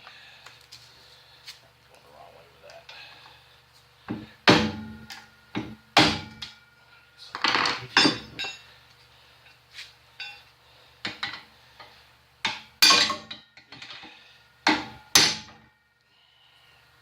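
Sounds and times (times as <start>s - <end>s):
metal tools striking metal: 4.5s - 8.7s, 12.5s - 14.0s.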